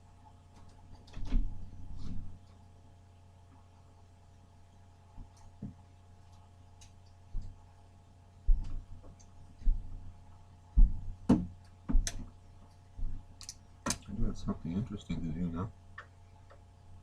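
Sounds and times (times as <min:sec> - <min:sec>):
steady low hum: 0:00.0 - 0:17.0
dull low thumps: 0:10.8 - 0:12.1.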